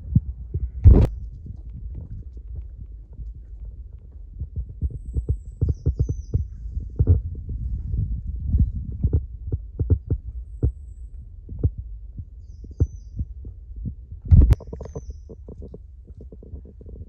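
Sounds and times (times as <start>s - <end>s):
camera jostling thuds: 0.8s - 2.6s, 14.3s - 14.8s.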